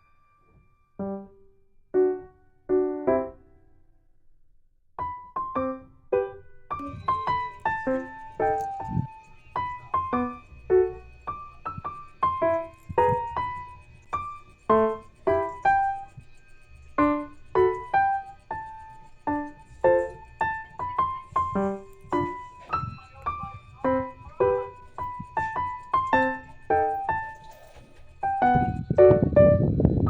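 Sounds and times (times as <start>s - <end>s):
keyboard melody: 6.8s - 29.7s.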